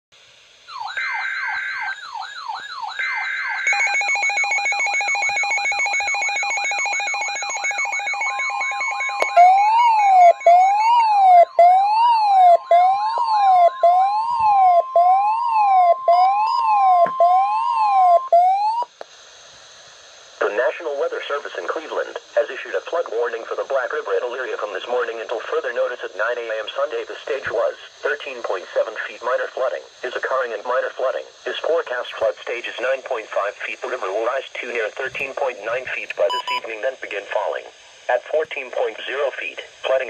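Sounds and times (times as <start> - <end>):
rise-and-fall siren wail: 0.7 - 3.8, 7.0 - 18.9
yelping siren sweeps: 0.7 - 4.0, 7.0 - 18.9
steady high tone: 0.7 - 18.9
warbling siren tones: 0.7 - 18.9.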